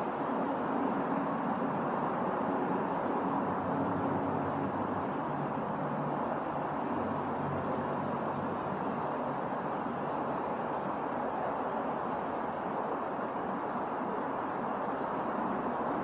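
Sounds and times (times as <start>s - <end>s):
faint city traffic hum: 0.0s - 16.0s.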